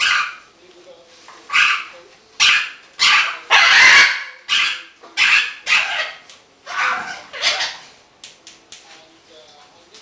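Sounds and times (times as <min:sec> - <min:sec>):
macaw squawking: 0:01.5 - 0:07.9.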